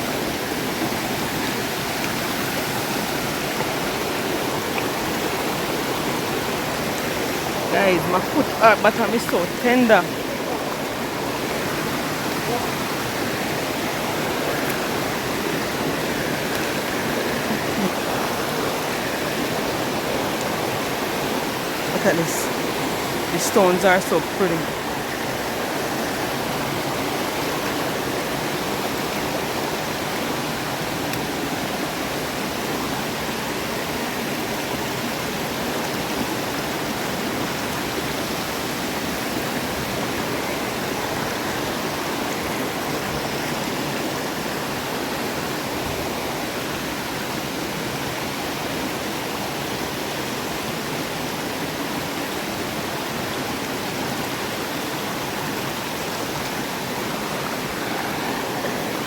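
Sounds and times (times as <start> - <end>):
river water rushing over stones: 0.0 - 59.0.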